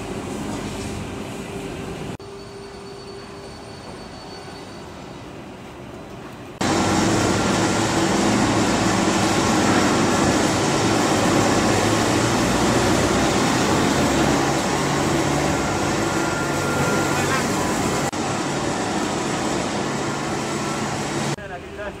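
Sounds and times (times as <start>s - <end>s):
ripping saw machine running: 6.6s - 21.4s.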